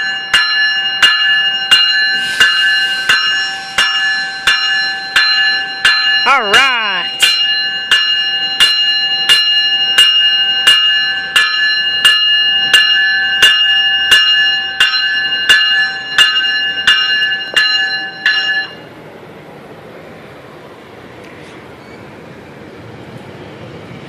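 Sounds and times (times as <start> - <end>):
locomotive bell ringing: 0.0 - 19.0.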